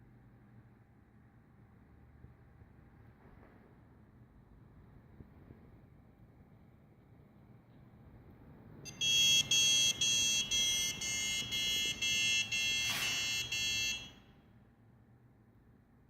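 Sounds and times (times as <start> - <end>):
motherboard buzzer beeping: 8.9 - 14.2.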